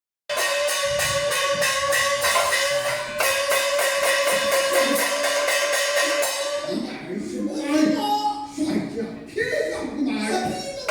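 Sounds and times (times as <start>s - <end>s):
steady ringing tone: 0.3s - 6.8s
rapid percussion strikes: 0.3s - 7.1s.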